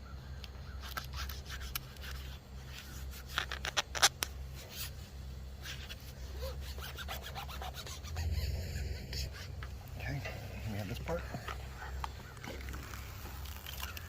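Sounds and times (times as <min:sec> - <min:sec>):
hands rubbing a decal: 0:00.8 - 0:05.0, 0:05.6 - 0:09.8.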